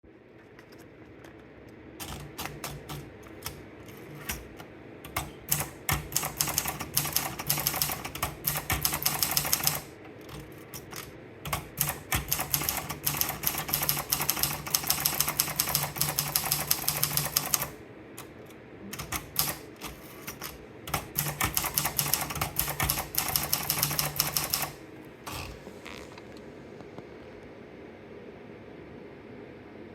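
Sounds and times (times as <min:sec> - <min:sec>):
typewriter key strikes: 0:05.1 - 0:17.7, 0:19.0 - 0:24.8.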